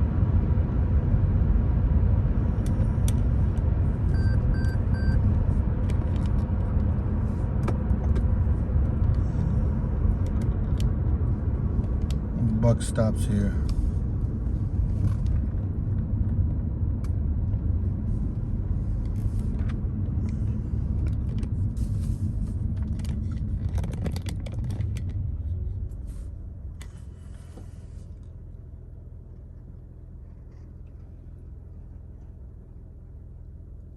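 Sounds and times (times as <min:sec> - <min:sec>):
car road noise and engine rumble: 0:00.0 - 0:33.9
clicks and rustles: 0:22.4 - 0:25.9.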